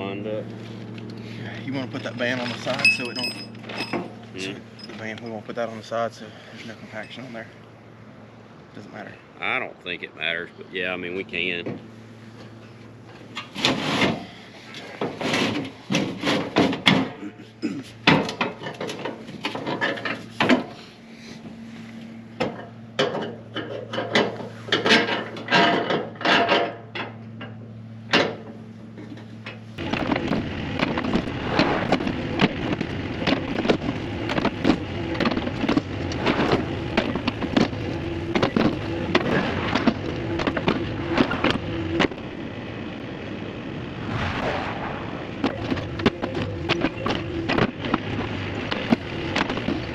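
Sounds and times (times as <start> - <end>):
engine hum: 0.0 - 49.9
knocks and clanks: 1.7 - 5.4, 13.0 - 20.8, 22.4 - 42.3, 45.3 - 49.9
machine noise with rapid rattling: 29.8 - 43.0.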